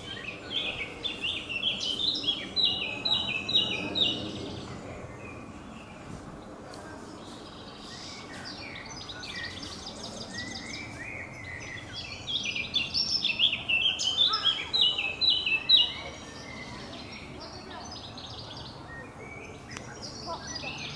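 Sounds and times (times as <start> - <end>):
small songbirds chirping: 0.0 - 20.9.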